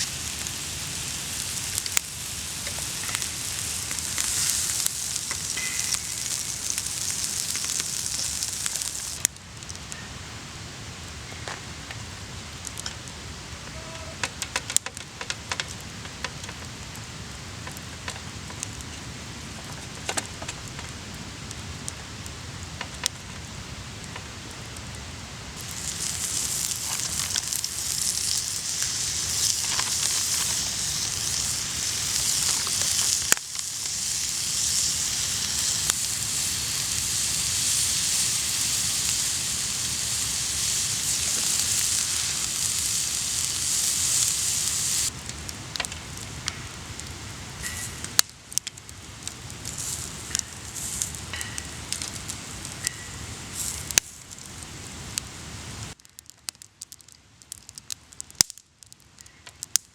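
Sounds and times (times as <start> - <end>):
steak sizzling on griddle: 0.0 - 9.3, 25.4 - 48.2, 48.9 - 56.0
campfire crackling and popping: 0.0 - 59.9.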